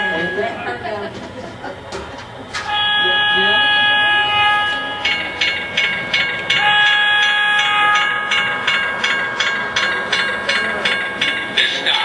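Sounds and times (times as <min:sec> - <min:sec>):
steady whine: 0:00.0 - 0:12.0
model steam locomotive chuffing: 0:02.6 - 0:12.0.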